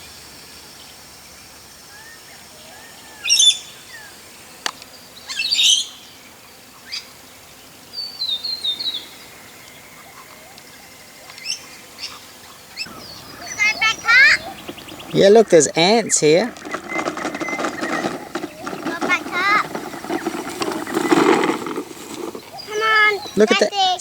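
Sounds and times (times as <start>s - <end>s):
birds chirping: 6.8s - 24.0s.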